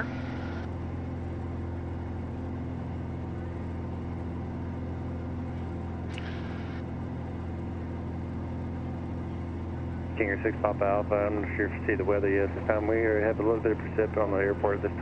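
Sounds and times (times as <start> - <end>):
aircraft engine and propeller drone: 0.0 - 15.0
radio squelch click and hiss: 6.1 - 6.8.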